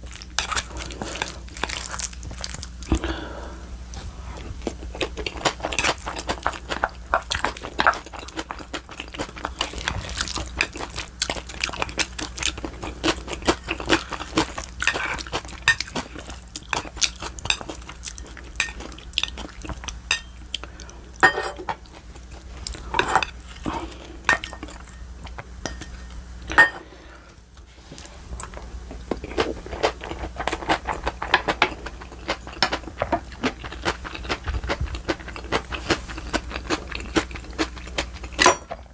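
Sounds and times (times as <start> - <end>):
chewing: 4.4 - 20.9, 28.0 - 38.9
utensils clinking on dishes: 20.1 - 20.4, 21.2 - 21.8, 22.9 - 23.4, 25.6 - 26.9, 38.3 - 38.9.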